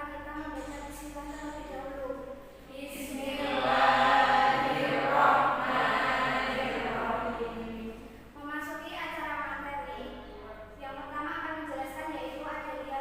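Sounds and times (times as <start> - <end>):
group of voices chanting: 2.8 - 8.0.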